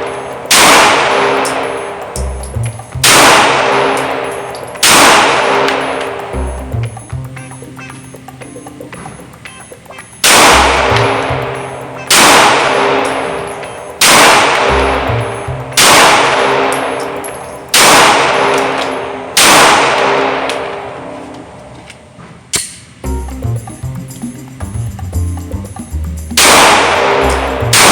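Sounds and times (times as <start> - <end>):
pistol shots: 0.0 - 2.1, 3.0 - 6.3, 10.2 - 11.3, 12.0 - 15.0, 15.8 - 20.8, 26.4 - 27.9.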